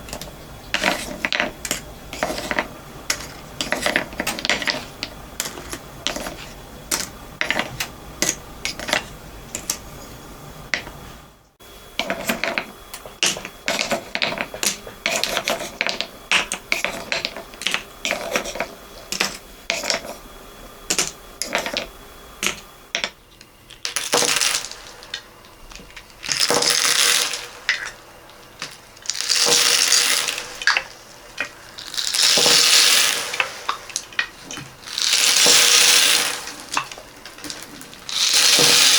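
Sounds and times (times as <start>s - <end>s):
beads poured from wooden bowls: 29.1s - 30.6s, 31.8s - 33.5s, 34.8s - 38.9s.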